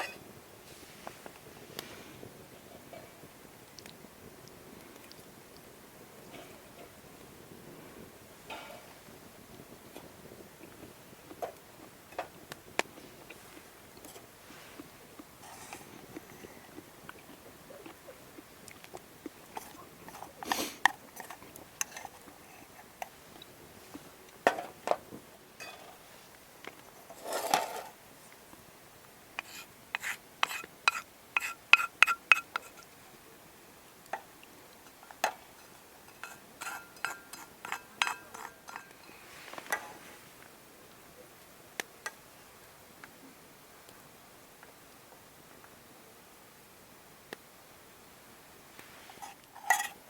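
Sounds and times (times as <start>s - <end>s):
metal cookware clinking and scraping: 0.0s - 0.2s, 8.5s - 8.9s, 25.6s - 26.0s, 35.0s - 40.0s, 49.1s - 50.0s.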